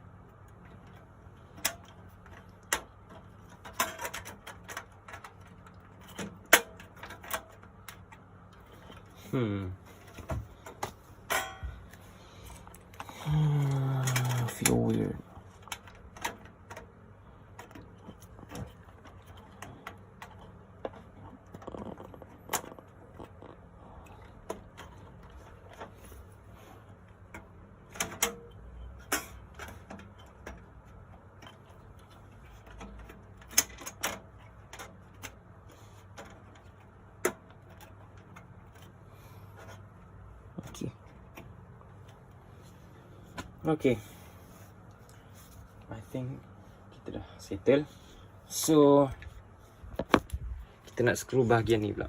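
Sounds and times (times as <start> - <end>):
faint low hum: 0.0 - 52.0
computer parts clicking and knocking: 0.4 - 9.2, 10.0 - 12.0, 12.6 - 23.6, 27.0 - 39.0.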